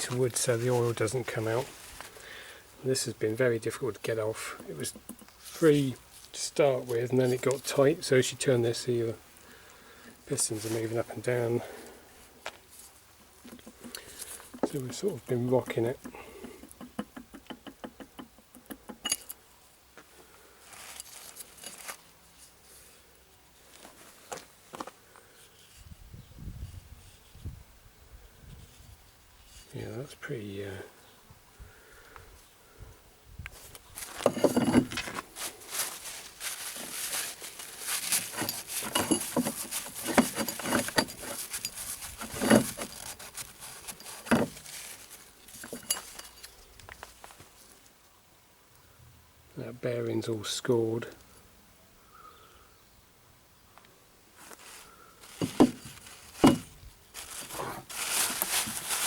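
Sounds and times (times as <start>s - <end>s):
metal tools clinking: 18.9s - 19.4s, 20.8s - 22.0s, 34.0s - 46.7s, 55.2s - 59.0s.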